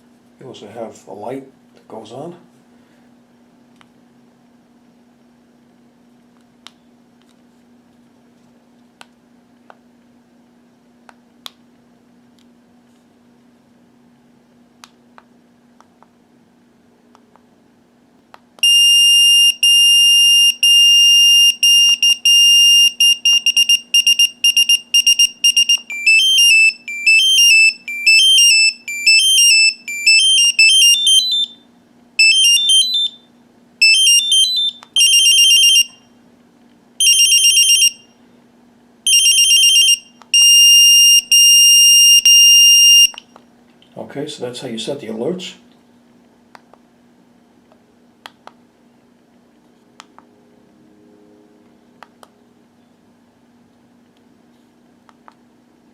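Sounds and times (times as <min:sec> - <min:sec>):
pager alert tones beeping: 0:21.4 - 0:31.6, 0:32.2 - 0:33.2.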